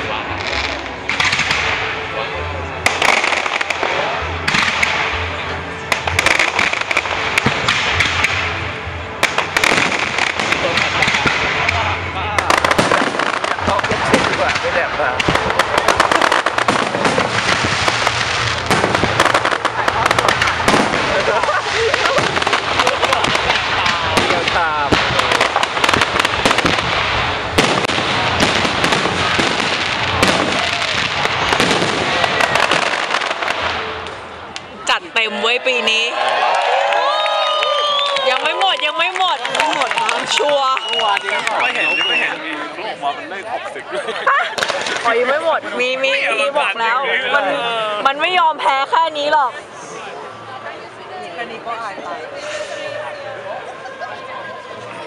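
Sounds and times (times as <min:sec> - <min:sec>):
music: 0:00.0 - 0:13.6
fireworks bangs and crackles: 0:00.0 - 0:36.0, 0:36.9 - 0:43.6, 0:44.3 - 0:51.1.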